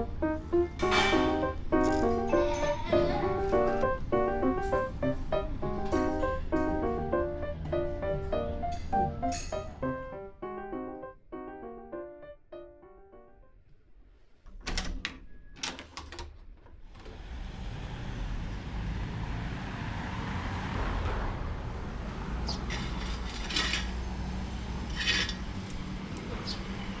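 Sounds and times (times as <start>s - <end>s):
traffic rumble: 17.0s - 27.0s.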